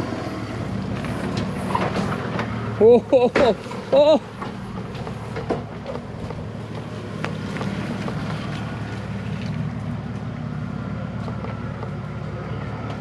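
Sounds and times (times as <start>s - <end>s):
vehicle engine running at low revs: 0.0s - 13.0s
sharp clicks and knocks: 4.4s - 8.4s.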